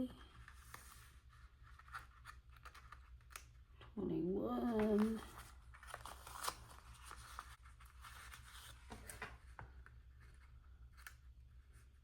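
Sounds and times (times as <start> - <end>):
paper stickers rustling: 4.6 - 11.3.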